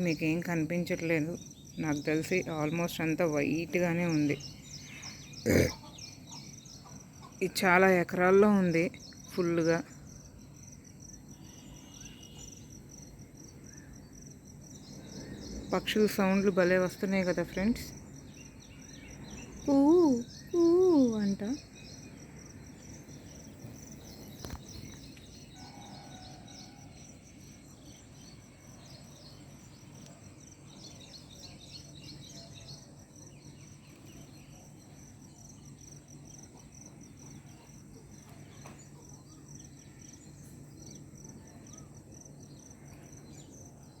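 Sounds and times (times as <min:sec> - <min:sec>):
small birds chirping: 0:00.0 - 0:44.0.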